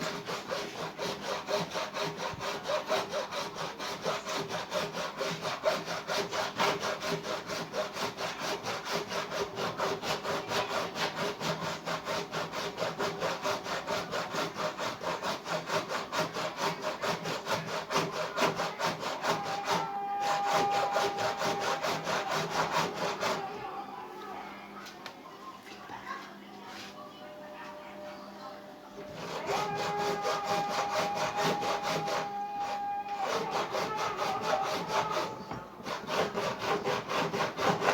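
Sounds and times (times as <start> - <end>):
saw cutting plastic: 0.0 - 23.8, 29.0 - 37.9
steady squeal: 29.0 - 35.5.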